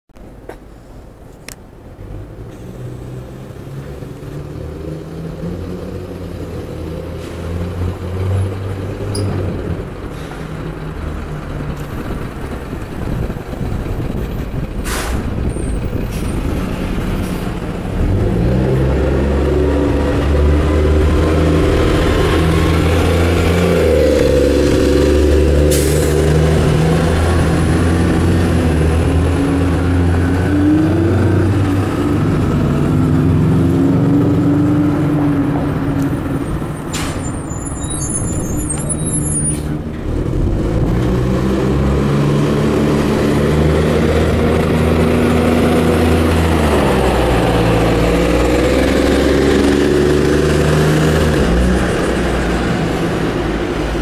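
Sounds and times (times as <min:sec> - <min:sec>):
bus diesel engine running: 0:00.3 - 0:54.0
air brake release: 0:14.8 - 0:15.4, 0:25.7 - 0:26.2, 0:36.9 - 0:39.7.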